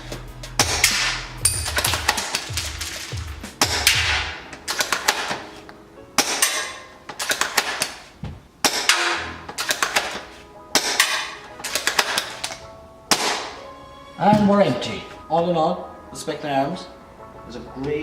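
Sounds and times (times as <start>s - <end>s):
background music: 0.0s - 18.0s
airsoft rifle shot crack: 13.1s - 13.6s.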